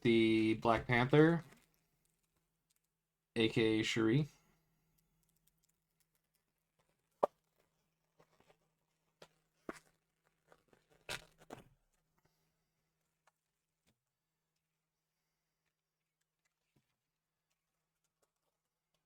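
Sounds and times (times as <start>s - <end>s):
packaging crinkling and rustling: 9.3s - 12.0s.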